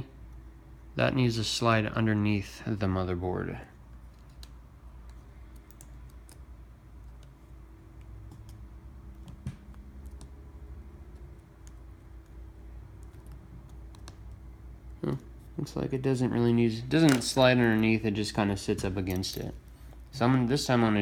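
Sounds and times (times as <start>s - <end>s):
low steady hum: 0.0s - 21.0s
tools clicking and tapping on phone: 4.1s - 7.4s, 8.0s - 14.4s.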